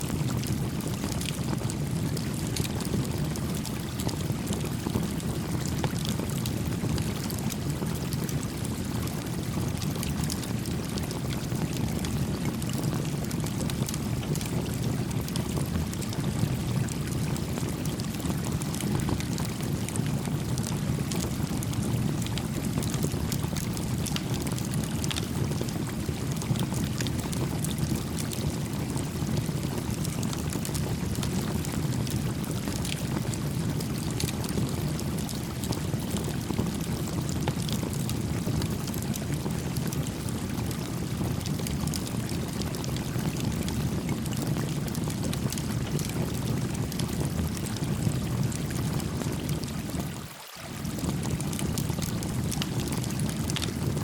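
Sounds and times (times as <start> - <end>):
campfire crackling: 51.0 - 54.0.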